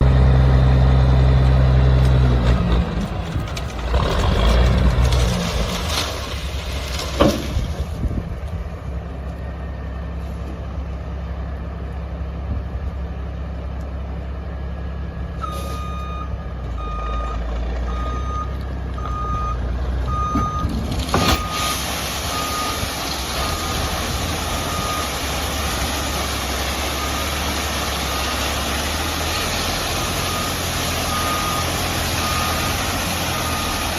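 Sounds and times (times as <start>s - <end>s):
truck engine running: 0.0s - 33.9s
reversing alarm beeping: 15.4s - 23.9s, 30.2s - 33.9s.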